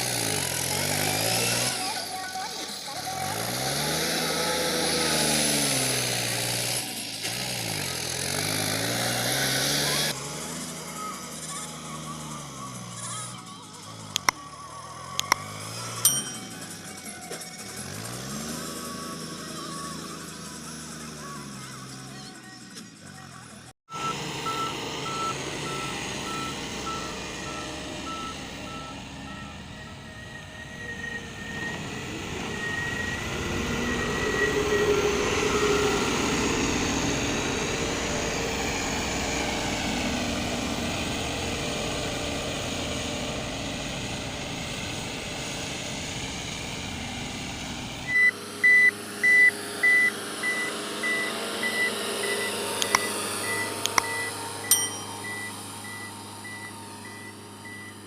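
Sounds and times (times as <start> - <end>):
tractor engine running: 9.7 - 58.0
reversing alarm beeping: 23.9 - 36.1, 48.1 - 58.0
high-pitched beeper: 48.1 - 58.0.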